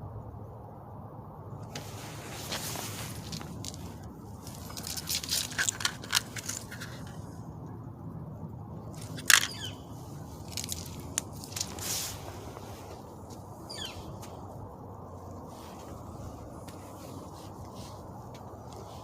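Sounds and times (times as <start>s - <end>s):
steady low hum: 0.0s - 19.0s
hands clicking and rustling objects: 2.5s - 7.2s, 9.0s - 9.6s, 10.4s - 11.9s.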